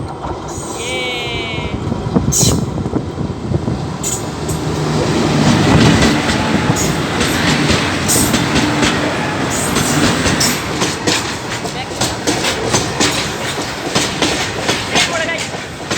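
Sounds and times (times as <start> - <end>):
train wagons rumbling: 0.0 - 15.9
wheels clattering over rail joints: 4.0 - 15.9.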